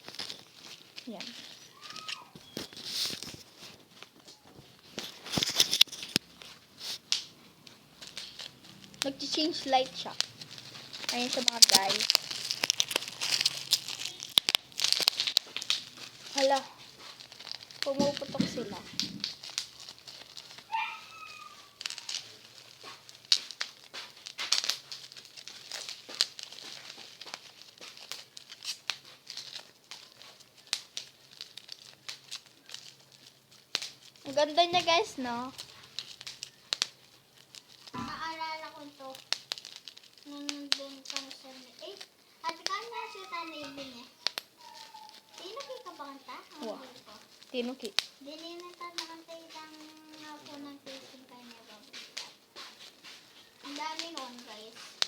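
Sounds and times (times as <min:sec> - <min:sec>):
bubble wrap crinkling: 0:00.0 - 0:55.0
bubble wrap snapping: 0:00.0 - 0:55.0.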